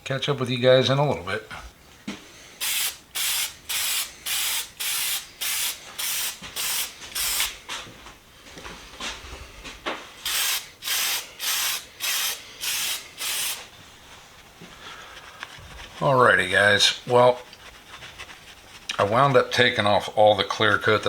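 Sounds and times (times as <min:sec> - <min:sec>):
spray can hissing bursts: 0:02.6 - 0:07.6, 0:10.2 - 0:13.7.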